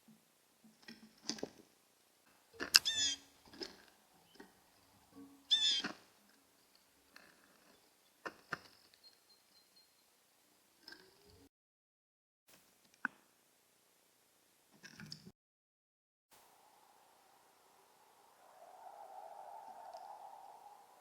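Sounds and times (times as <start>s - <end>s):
woodpecker rolling calls: 2.4s - 10.2s, 16.6s - 21.0s
woodpecker tapping: 2.6s - 6.0s.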